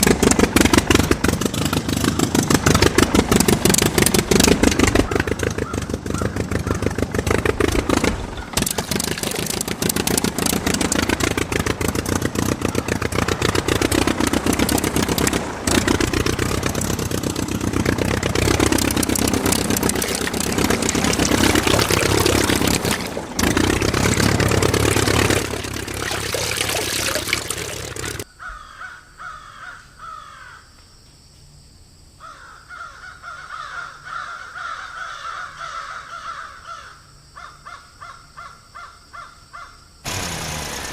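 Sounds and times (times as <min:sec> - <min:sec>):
small engine running fast: 0:00.0 - 0:28.2, 0:40.0 - 0:40.9
crows cawing: 0:05.0 - 0:07.0, 0:28.3 - 0:30.7, 0:32.2 - 0:39.8.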